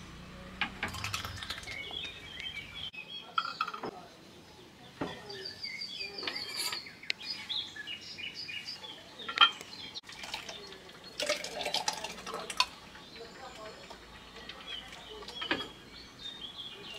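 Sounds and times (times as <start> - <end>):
birds chirping: 0.0 - 16.9
kitchenware clinking: 3.3 - 4.0, 6.2 - 6.9.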